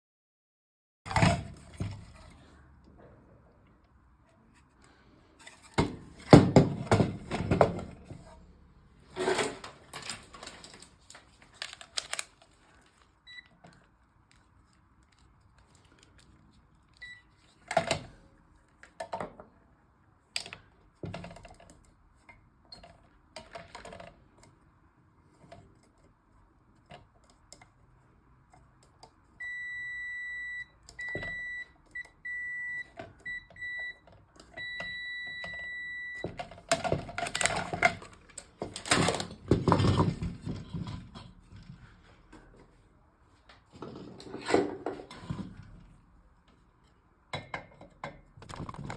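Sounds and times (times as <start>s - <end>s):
tools clattering on a workbench: 9.1s - 11.8s, 43.7s - 45.6s.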